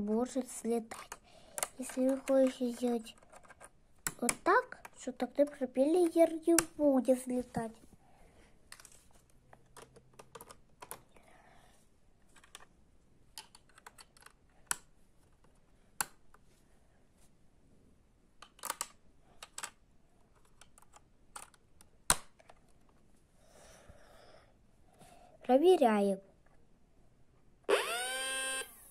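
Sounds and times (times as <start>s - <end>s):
plastic parts clicking and snapping: 0.9s - 6.8s, 8.7s - 11.1s, 12.3s - 12.7s, 13.3s - 16.4s, 18.4s - 23.0s.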